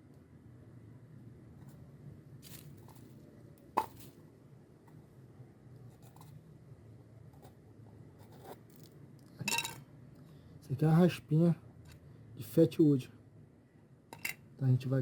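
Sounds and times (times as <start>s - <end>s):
faint handling noise: 1.6s - 4.2s.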